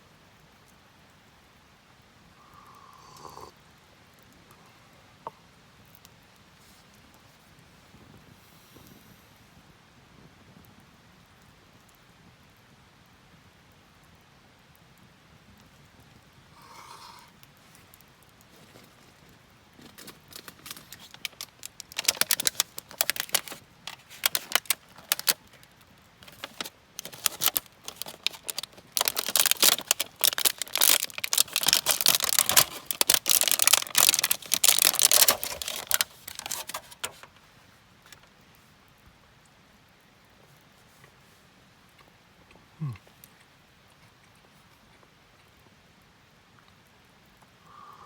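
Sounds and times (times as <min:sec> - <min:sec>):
small hard objects clattering: 0:18.5 - 0:25.6, 0:26.2 - 0:37.4.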